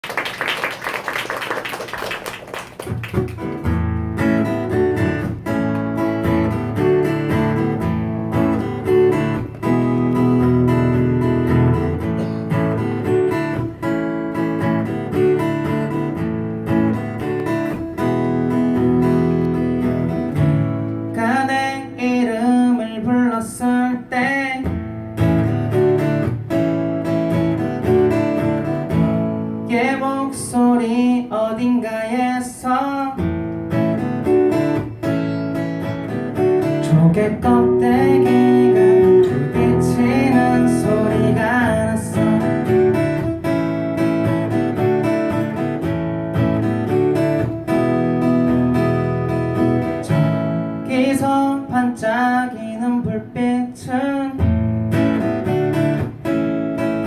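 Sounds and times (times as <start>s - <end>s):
acoustic guitar strumming chords: 2.9s - 57.0s
woman singing: 36.9s - 42.5s.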